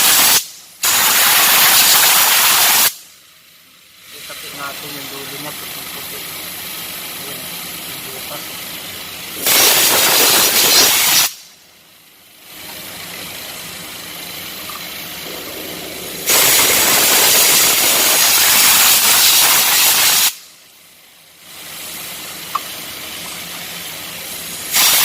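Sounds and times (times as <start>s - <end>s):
pressurized spray hissing: 0.0s - 3.0s, 9.4s - 11.5s, 15.2s - 20.5s, 24.2s - 25.0s.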